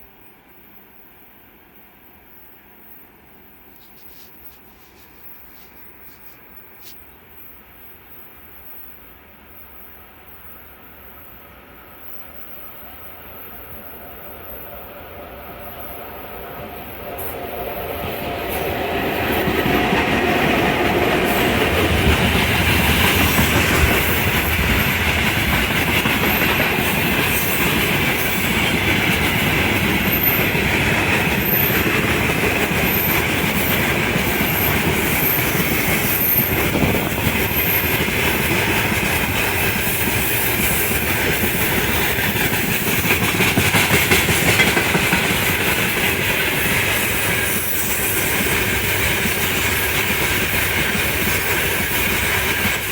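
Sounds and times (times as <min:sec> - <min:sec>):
freight train rolling past: 0:00.0 - 0:52.9
wheels clacking over rail joints: 0:17.2 - 0:52.9.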